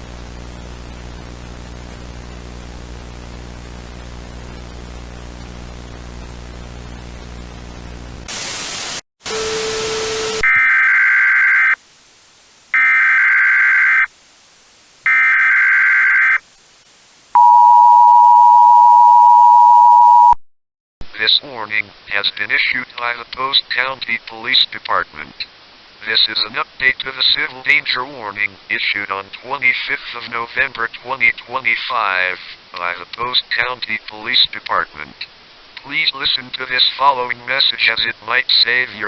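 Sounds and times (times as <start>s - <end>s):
static: 0.2s - 20.4s
data tone bursts: 10.4s - 11.8s, 12.7s - 14.1s, 15.0s - 16.4s, 17.4s - 20.4s
electrical hum: 10.4s - 20.4s
two-tone alert beep: 17.4s - 20.4s.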